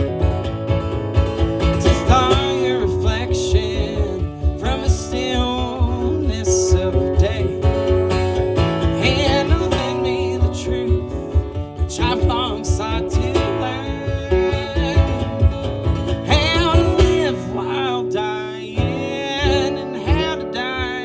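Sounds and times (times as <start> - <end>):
acoustic guitar: 0.0 - 21.0
country band playing a waltz: 0.0 - 21.0
steady bass pulse: 0.0 - 21.0.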